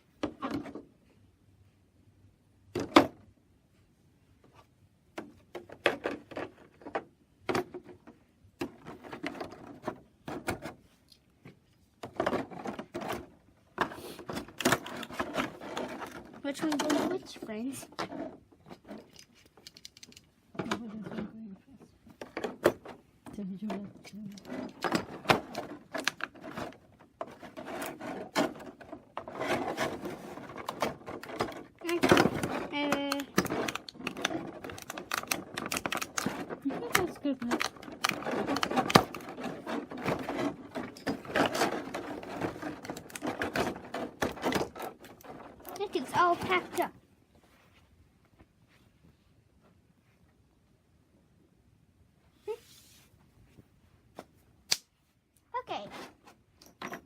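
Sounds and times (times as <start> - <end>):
wood rubbing and scraping: 12.0 - 47.8
wooden toy pieces knocking: 22.2 - 46.9.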